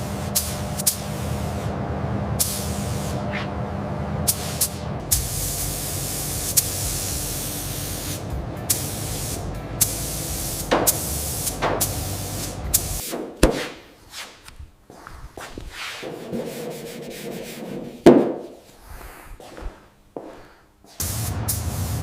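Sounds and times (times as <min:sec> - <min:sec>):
compressed air spraying: 0:00.0 - 0:01.7, 0:02.4 - 0:03.2, 0:04.3 - 0:13.2, 0:21.0 - 0:22.0
loud knock: 0:10.7 - 0:11.0, 0:16.0 - 0:18.6.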